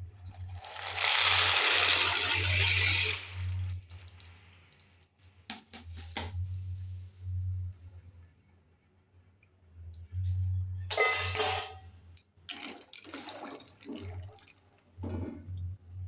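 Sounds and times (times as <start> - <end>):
running water: 0.3 - 5.1, 12.5 - 15.8.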